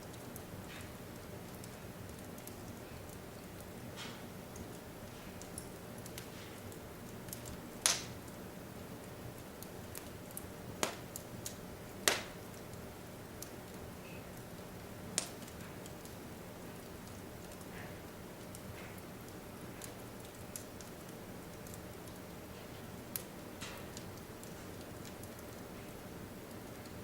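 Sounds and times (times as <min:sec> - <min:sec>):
wood fire crackling: 0:00.0 - 0:27.0
sharp pops of fire: 0:05.4 - 0:08.3, 0:09.6 - 0:12.8, 0:15.1 - 0:16.2, 0:23.0 - 0:25.7.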